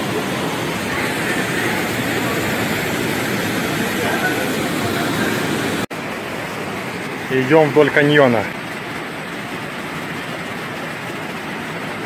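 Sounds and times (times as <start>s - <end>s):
faint distant voices: 0.0s - 5.8s
waterfall rushing: 0.0s - 12.0s.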